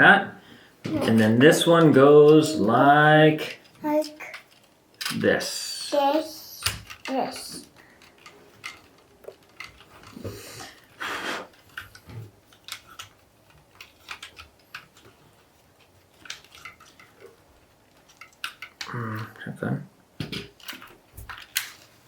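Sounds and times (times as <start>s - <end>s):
plastic bricks clicking: 6.6s - 15.2s, 16.1s - 17.2s, 17.9s - 19.0s.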